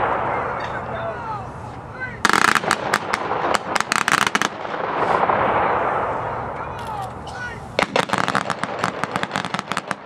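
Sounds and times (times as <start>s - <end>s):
rifle shots volley: 2.2s - 6.0s.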